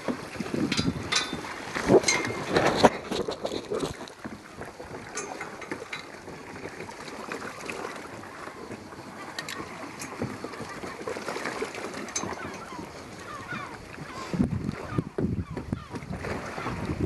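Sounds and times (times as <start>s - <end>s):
kayak splashing and knocking: 0.0s - 17.0s
wind and water hiss: 0.0s - 17.0s.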